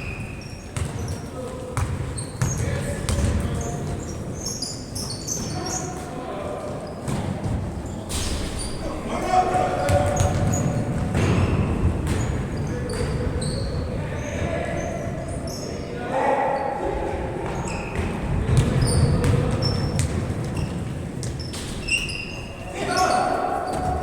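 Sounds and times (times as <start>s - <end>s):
sneakers squeaking: 0.0s - 24.0s
basketball bouncing on court: 0.1s - 1.2s, 1.8s - 4.0s, 9.8s - 13.8s, 17.5s - 22.1s.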